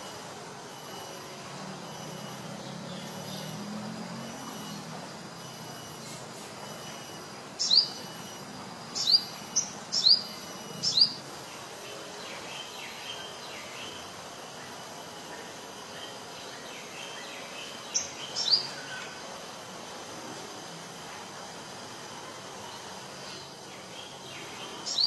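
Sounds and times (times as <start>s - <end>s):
faint insect drone: 0.0s - 25.0s.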